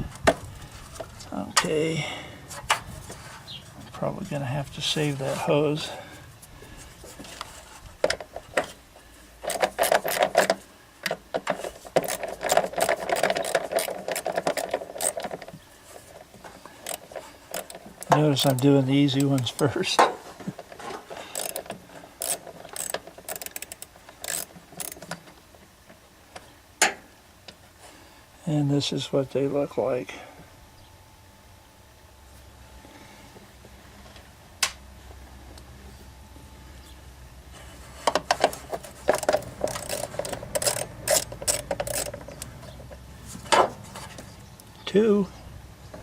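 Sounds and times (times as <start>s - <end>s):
socket ratchet clicking: 11.9s - 15.5s, 16.8s - 19.6s, 21.3s - 25.2s, 39.1s - 42.5s.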